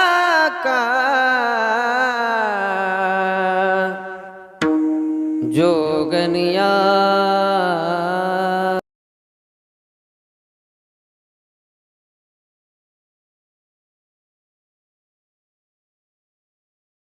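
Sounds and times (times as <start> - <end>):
man singing devotional song: 0.0 - 4.6, 5.4 - 8.8
held drone note: 4.6 - 7.0.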